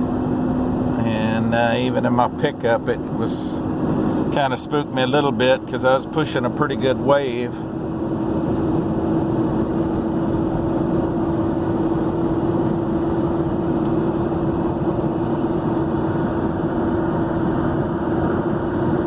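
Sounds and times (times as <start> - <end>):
road and engine noise in cabin: 0.0 - 19.0.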